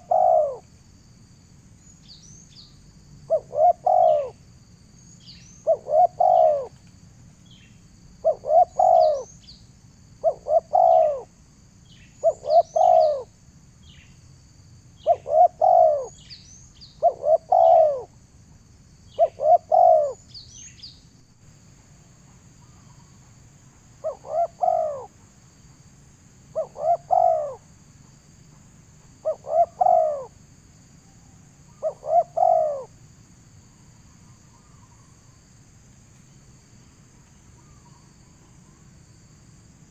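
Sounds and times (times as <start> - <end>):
bird calling in low notes: 0.0 - 0.6, 3.3 - 4.4, 10.2 - 11.3, 12.2 - 13.3, 15.0 - 18.2, 19.1 - 20.2, 24.0 - 25.1, 26.5 - 27.6, 29.2 - 30.4, 31.7 - 32.9
high insect drone: 0.0 - 39.9
small birds chirping: 1.8 - 4.4, 5.0 - 9.7, 10.3 - 14.2, 14.9 - 18.2, 19.1 - 21.1.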